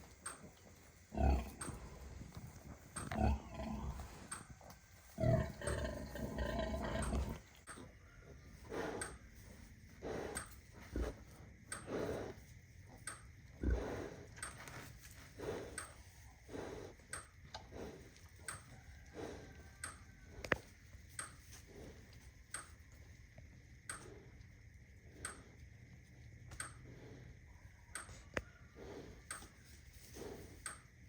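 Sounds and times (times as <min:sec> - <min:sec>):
soft animal noises: 0:00.0 - 0:31.0.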